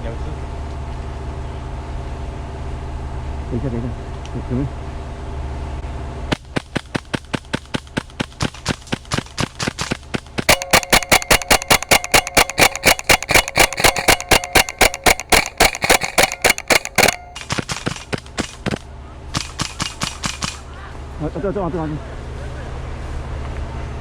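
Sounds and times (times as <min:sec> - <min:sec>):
airsoft gun rapid shots: 0:06.3 - 0:18.8, 0:19.4 - 0:20.6.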